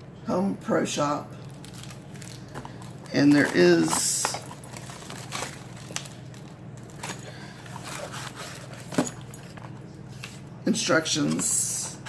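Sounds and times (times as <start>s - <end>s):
packaging crinkling and rustling: 1.4s - 10.4s.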